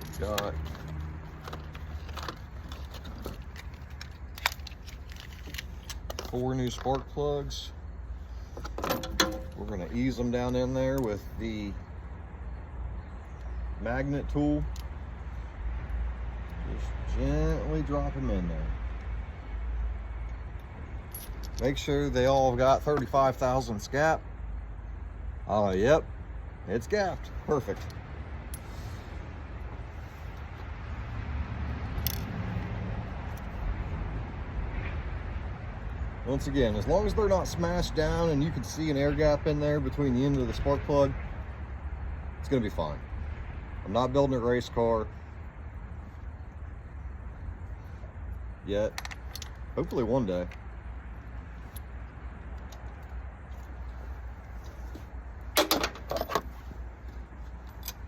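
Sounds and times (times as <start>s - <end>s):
metal clicks and clinks: 0.0s - 7.0s, 8.6s - 11.2s, 20.6s - 21.8s, 48.9s - 50.6s
low outdoor background rumble: 0.0s - 58.0s.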